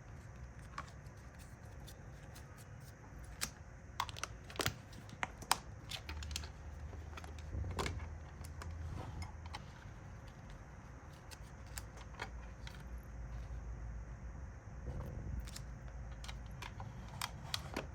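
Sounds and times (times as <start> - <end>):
low handling rumble: 14.2 - 16.7.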